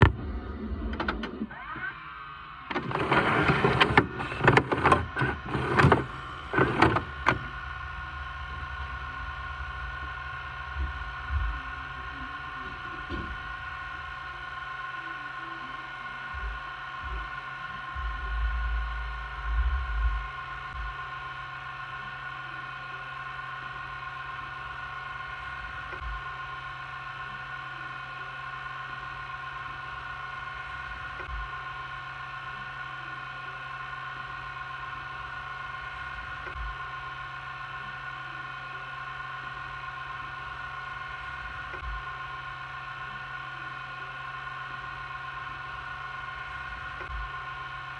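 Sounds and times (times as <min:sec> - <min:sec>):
vcr motor hum and whine: 0:00.0 - 0:47.9
tape mechanism clunks: 0:02.7 - 0:07.6.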